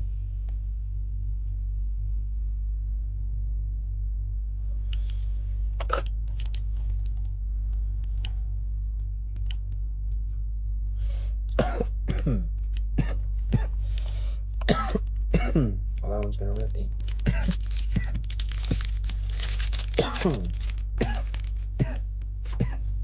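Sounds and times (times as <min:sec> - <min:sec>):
steady low hum: 0:00.0 - 0:23.0
cough-like vocal sounds: 0:05.8 - 0:06.2, 0:11.5 - 0:13.8, 0:14.6 - 0:15.9, 0:17.2 - 0:18.2, 0:19.9 - 0:22.9
sharp clicks of cards: 0:05.8 - 0:07.2
foil wrapper rustling: 0:16.5 - 0:21.8.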